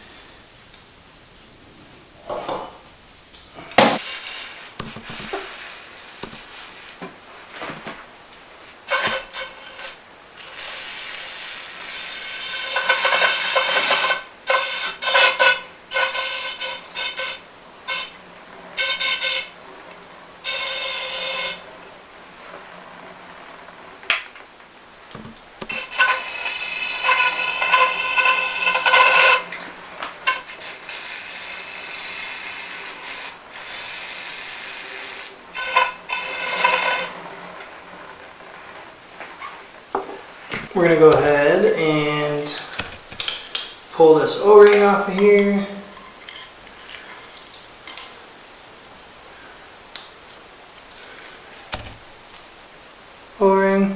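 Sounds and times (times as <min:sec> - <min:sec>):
spray hissing: 0:04.0 - 0:07.0, 0:08.8 - 0:18.2, 0:20.4 - 0:21.7, 0:25.7 - 0:29.6, 0:30.2 - 0:37.2.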